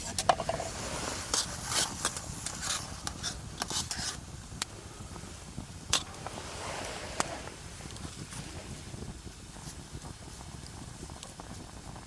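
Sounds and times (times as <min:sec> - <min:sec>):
sharp clicks and light scrapes: 0:00.0 - 0:04.7
steady low rumble: 0:00.0 - 0:12.0.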